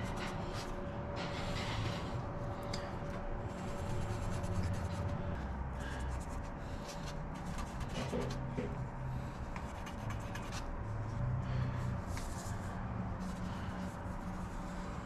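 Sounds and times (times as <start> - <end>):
marker scratching on metal: 0.0 - 2.2, 3.5 - 11.2
steady low hum: 0.0 - 15.0.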